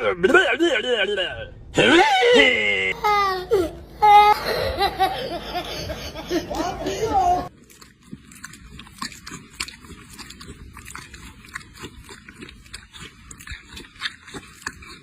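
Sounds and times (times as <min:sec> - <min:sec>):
goat chewing: 0:07.5 - 0:15.0.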